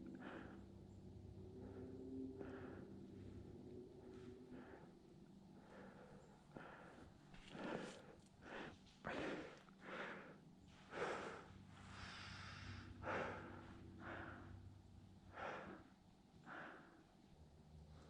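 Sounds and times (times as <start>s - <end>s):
person breathing heavily: 0.0s - 0.8s, 1.4s - 17.2s.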